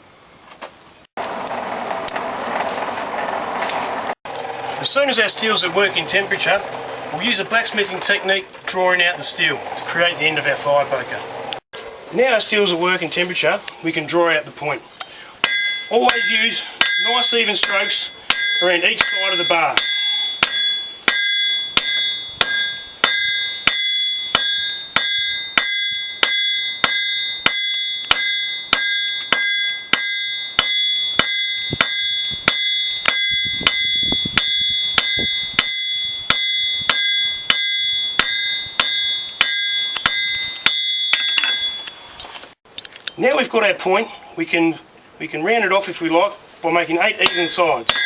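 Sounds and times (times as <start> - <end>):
hammer striking steel on anvil: 15.4 - 42.2, 47.2 - 48.0
anvil ringing: 15.4 - 42.3, 47.2 - 48.0.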